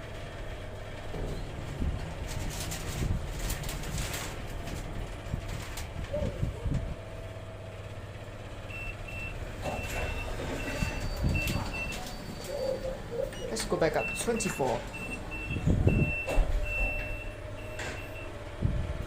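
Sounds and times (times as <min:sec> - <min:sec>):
low steady rumble: 0:14.8 - 0:19.0.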